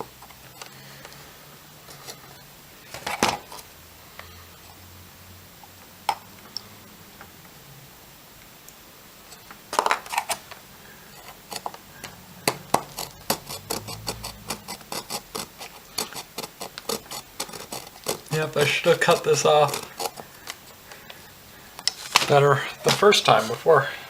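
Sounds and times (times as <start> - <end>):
nail file scraping circuit board: 1.9 - 3.7, 11.1 - 21.9.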